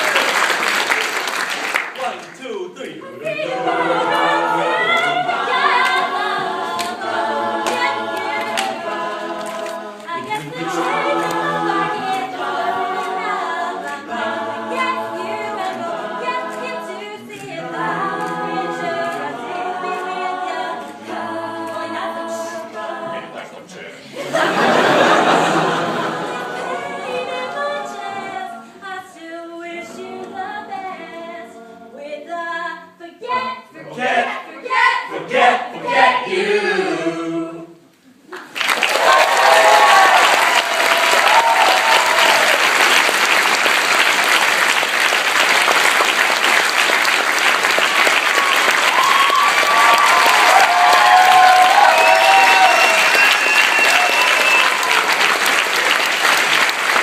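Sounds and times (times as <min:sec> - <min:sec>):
a cappella group singing: 0:03.0 - 0:38.1, 0:48.5 - 0:55.6.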